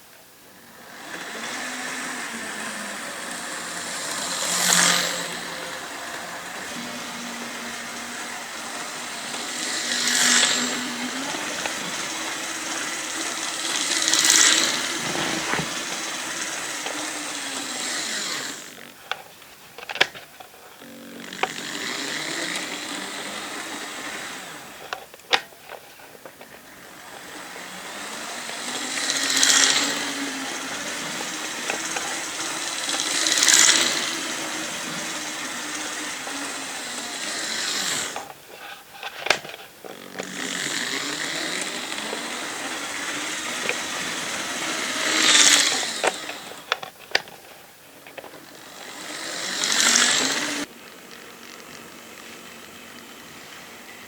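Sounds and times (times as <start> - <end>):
model train motor whirring: 0.0 - 54.0.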